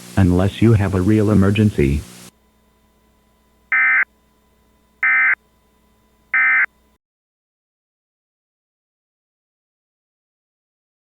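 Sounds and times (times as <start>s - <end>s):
shrill digital data tone bursts: 3.7s - 4.0s, 5.0s - 5.4s, 6.3s - 6.7s.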